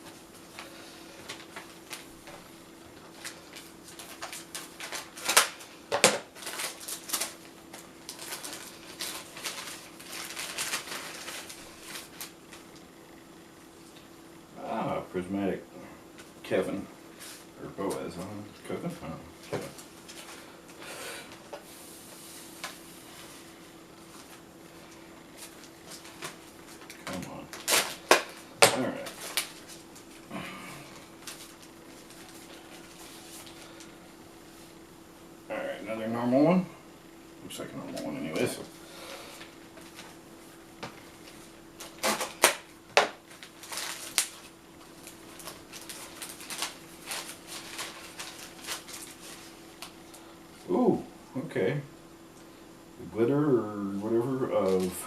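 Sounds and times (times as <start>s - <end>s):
faint hum: 0.0s - 55.0s
packaging rustle: 3.0s - 12.8s, 24.1s - 30.2s, 30.8s - 34.0s, 41.1s - 50.3s.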